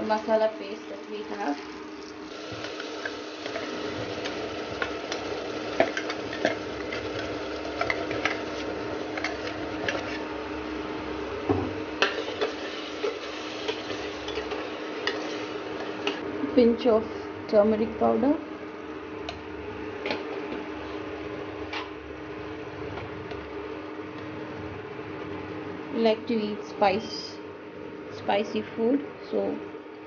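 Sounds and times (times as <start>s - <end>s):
paste sizzling in hot oil: 1.1s - 10.2s, 12.0s - 15.7s.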